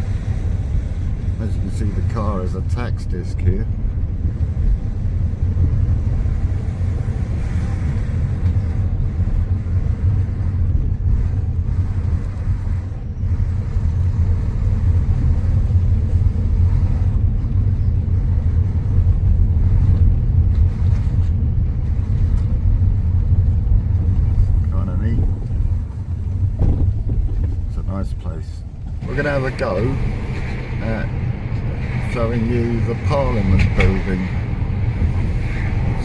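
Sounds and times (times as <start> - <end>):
car engine rumble: 0.0 - 36.0.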